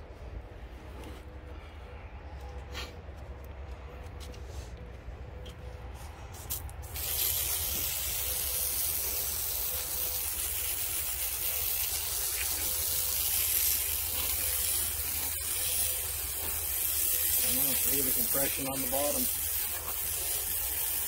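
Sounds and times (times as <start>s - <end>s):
low running hum: 0.0s - 21.0s
saw hissing through log: 6.5s - 21.0s.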